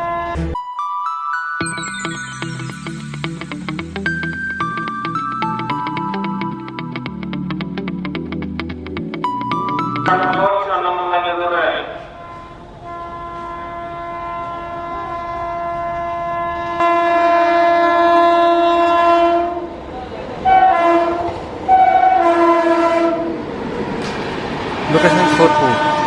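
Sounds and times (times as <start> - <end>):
train horn blasts: 0.0 - 0.6, 11.9 - 19.8, 20.4 - 23.4, 24.9 - 26.0.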